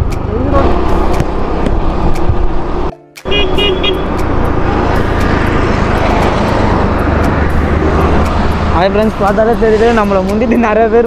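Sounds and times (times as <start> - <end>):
road noise and wind rumble: 0.0 - 11.0
vehicle horn toots: 3.3 - 4.2.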